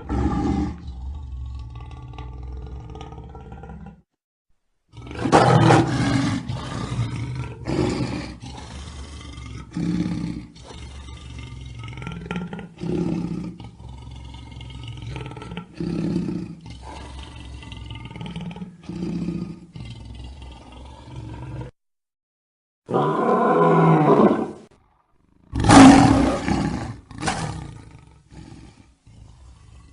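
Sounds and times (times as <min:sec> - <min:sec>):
lion roaring: 0:00.0 - 0:04.0, 0:04.9 - 0:21.7, 0:22.9 - 0:29.9.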